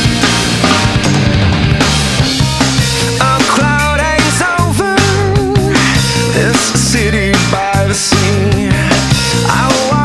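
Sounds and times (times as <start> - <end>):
distorted guitars: 0.0 - 10.0
drums: 0.0 - 10.0
person singing: 3.0 - 10.0.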